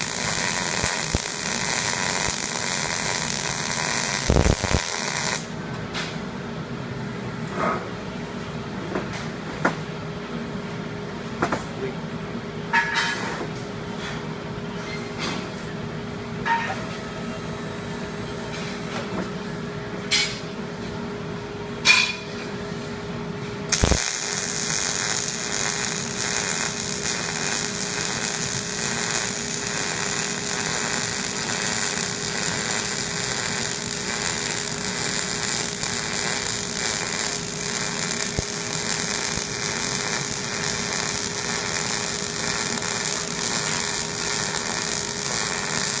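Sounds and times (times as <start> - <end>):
welding arc crackling: 0.0 - 5.5, 23.7 - 46.0
steady hum: 0.0 - 5.7, 23.0 - 46.0.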